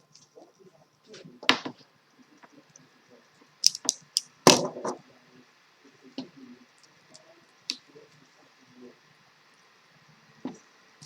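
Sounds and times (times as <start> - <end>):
cable being cut and stripped: 3.6 - 4.3.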